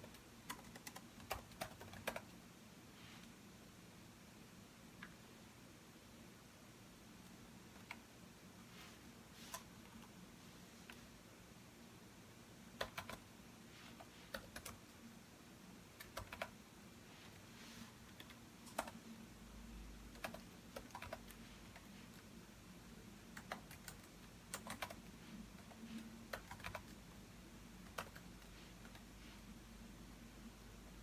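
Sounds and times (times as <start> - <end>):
computer keyboard typing: 0.0 - 2.3, 7.7 - 8.1, 12.8 - 13.3, 14.0 - 14.9, 16.0 - 16.6, 18.1 - 19.0, 20.1 - 21.9, 23.3 - 27.0, 27.8 - 29.1.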